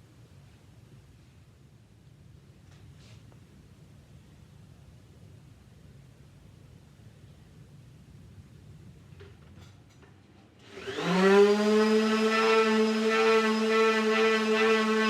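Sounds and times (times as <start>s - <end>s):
power tool motor whining: 10.6s - 15.0s.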